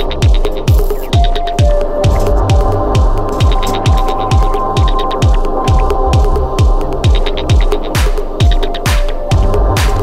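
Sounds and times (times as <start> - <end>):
electronic music: 0.0 - 10.0
kick drum: 0.0 - 10.0.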